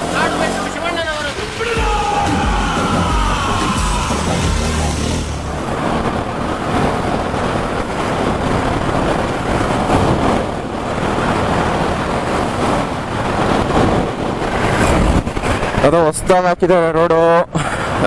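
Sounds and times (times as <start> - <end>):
wind on microphone: 5.3 - 15.8.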